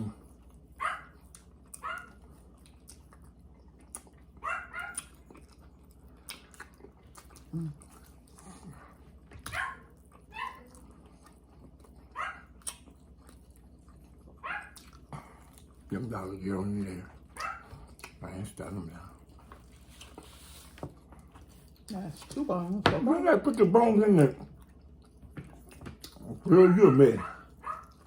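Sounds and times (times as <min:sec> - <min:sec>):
dog barking: 0:00.8 - 0:01.2, 0:01.8 - 0:02.2, 0:04.4 - 0:05.2, 0:09.5 - 0:10.7, 0:12.1 - 0:12.6, 0:14.4 - 0:14.9, 0:17.4 - 0:17.7, 0:26.5 - 0:28.0.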